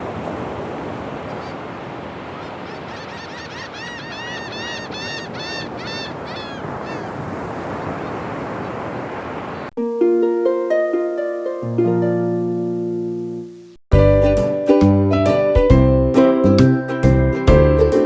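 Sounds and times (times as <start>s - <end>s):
short arched bird calls: 1.2s - 8.8s.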